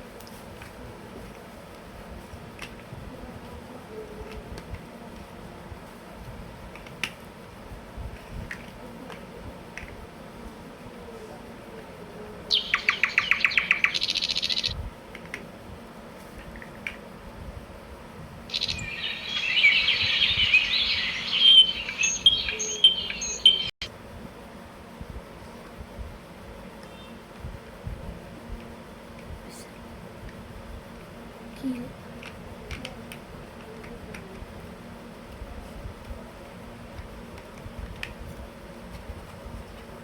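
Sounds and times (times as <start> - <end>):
bird chirping and warbling: 12.5 - 14.8, 18.5 - 23.8.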